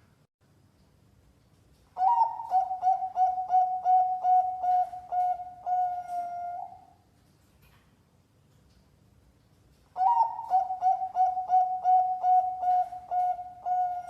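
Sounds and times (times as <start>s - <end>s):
dove cooing: 2.0s - 7.0s, 10.0s - 14.0s.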